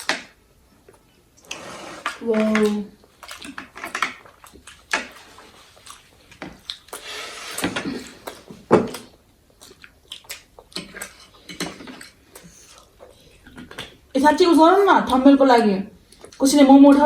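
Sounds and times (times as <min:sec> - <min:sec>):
wet chewing and slurping: 0:00.0 - 0:14.1.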